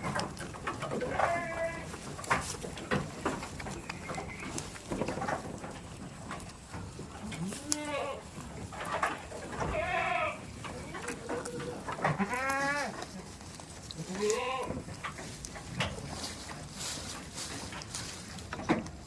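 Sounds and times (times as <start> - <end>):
small knocks and rustles: 0.0 - 19.0
goats bleating: 0.9 - 2.0, 7.2 - 8.4, 9.5 - 13.4, 14.0 - 14.8.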